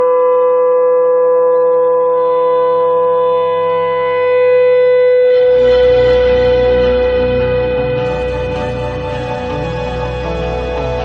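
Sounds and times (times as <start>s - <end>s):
steady horn-like note: 3.4s - 11.0s
low music: 5.3s - 11.0s.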